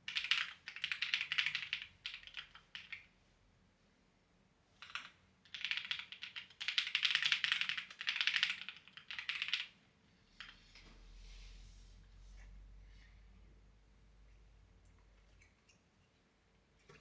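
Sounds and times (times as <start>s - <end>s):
computer keyboard typing: 0.1s - 3.1s, 4.8s - 9.8s, 10.4s - 10.8s.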